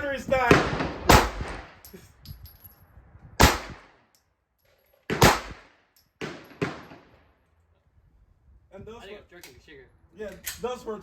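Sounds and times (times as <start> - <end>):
pistol shots with echo: 0.5 - 1.8, 3.4 - 4.0, 5.1 - 7.0.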